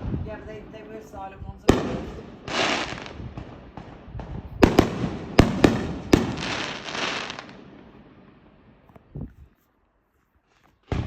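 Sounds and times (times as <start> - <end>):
fireworks bangs: 1.6 - 8.5
fireworks crackling hiss: 1.7 - 3.4, 4.7 - 7.6.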